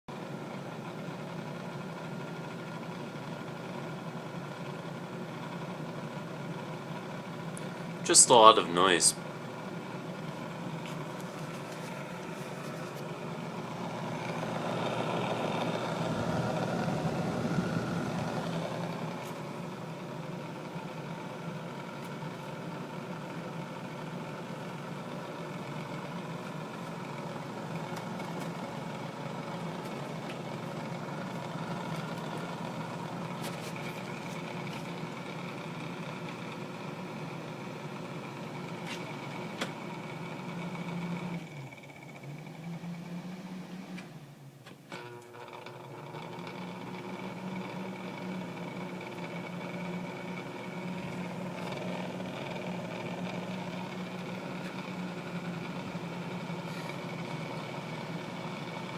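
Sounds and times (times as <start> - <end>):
window fan blades rattling: 10.8 - 19.9.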